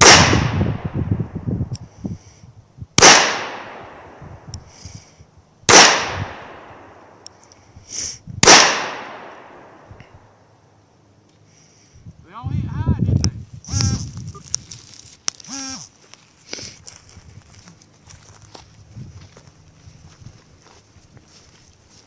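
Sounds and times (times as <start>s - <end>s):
handgun shots with echo: 0.0s - 0.9s, 3.0s - 4.2s, 5.7s - 7.1s, 8.4s - 9.9s.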